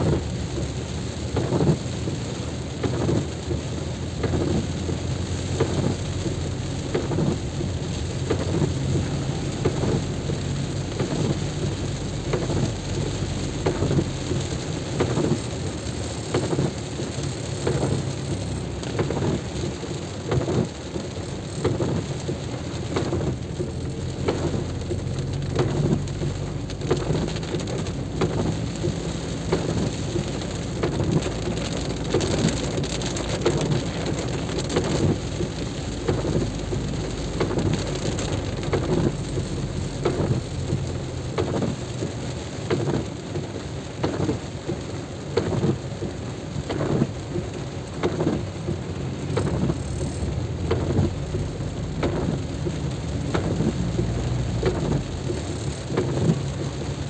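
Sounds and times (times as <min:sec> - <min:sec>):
steady low rumble: 0:00.0 - 0:16.0
heavy rain pattering: 0:00.0 - 0:57.0.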